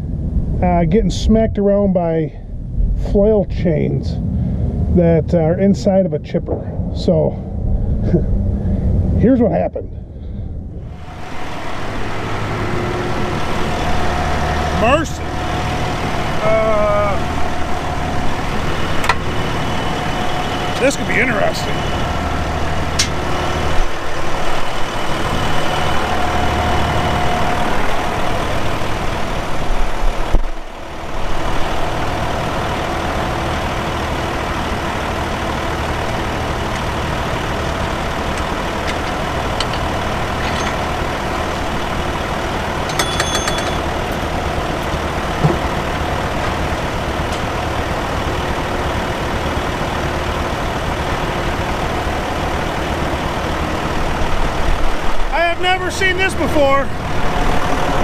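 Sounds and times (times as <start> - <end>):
chipper engine and flail chains: 0.0 - 58.0
loud knocks of flail chains: 40.4 - 40.9, 42.8 - 43.9.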